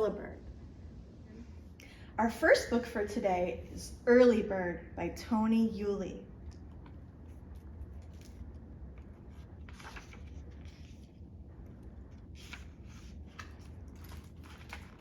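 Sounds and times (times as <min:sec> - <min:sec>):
low steady hum: 0:00.0 - 0:15.0
picture book pages rustling: 0:06.7 - 0:15.0.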